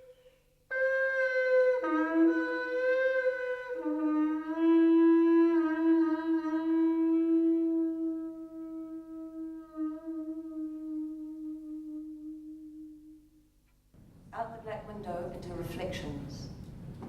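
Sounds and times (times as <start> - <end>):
wind instrument long notes: 0.0 - 13.6.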